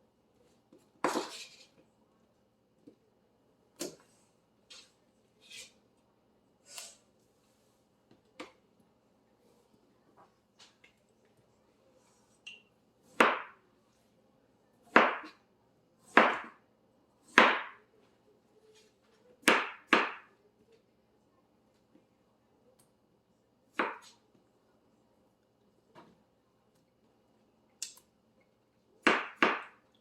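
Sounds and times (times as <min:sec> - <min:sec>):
knife chopping melon: 0:13.1 - 0:13.6, 0:14.9 - 0:15.4, 0:16.0 - 0:16.6, 0:17.2 - 0:17.8, 0:19.4 - 0:20.3, 0:23.7 - 0:24.1, 0:29.0 - 0:29.8.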